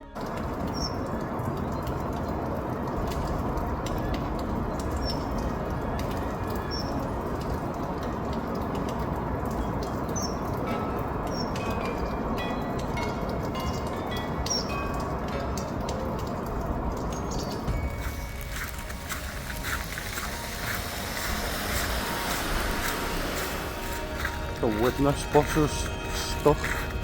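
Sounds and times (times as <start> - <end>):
steady rushing noise: 15.0 - 27.0.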